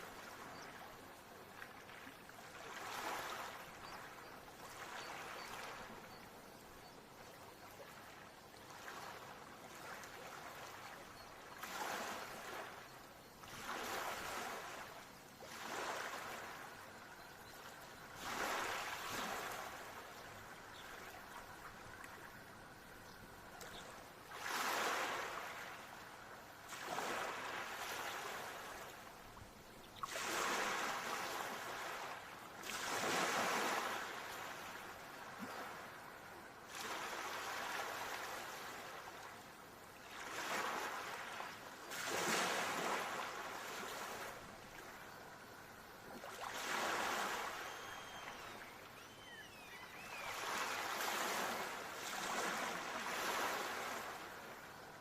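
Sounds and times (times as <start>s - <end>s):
ocean waves breaking on shore: 0.0s - 55.0s
faint high gliding calls: 47.4s - 50.9s.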